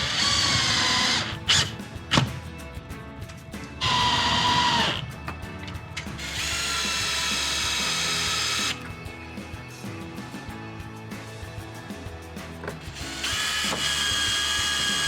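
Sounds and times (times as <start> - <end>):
power drill running: 0.0 - 1.7, 3.8 - 5.0, 6.2 - 8.9, 12.9 - 15.0
background music: 0.0 - 15.0.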